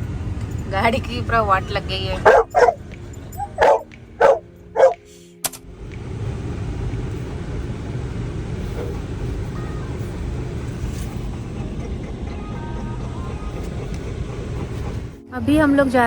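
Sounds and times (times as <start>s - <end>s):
steady low rumble: 0.0s - 16.0s
dog barking: 2.2s - 2.8s, 3.4s - 5.0s, 10.6s - 15.2s.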